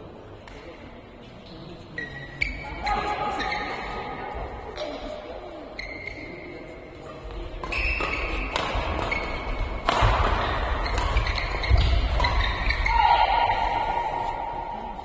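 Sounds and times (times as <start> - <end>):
shoe squeaks on court floor: 5.8 - 6.6, 7.7 - 9.7
racket striking shuttlecock: 7.6 - 13.0.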